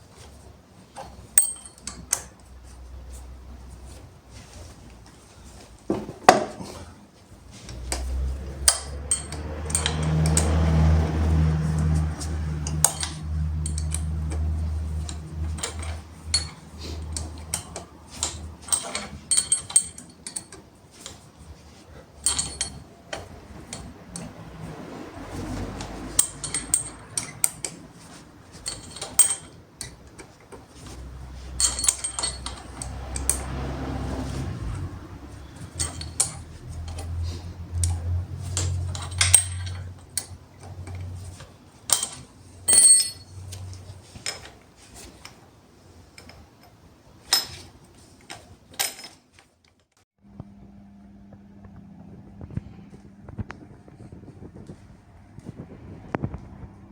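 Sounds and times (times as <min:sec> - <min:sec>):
metal tools clinking: 0:00.2 - 0:02.5, 0:05.9 - 0:45.4, 0:46.1 - 0:49.5
low electric motor hum: 0:50.2 - 0:54.9.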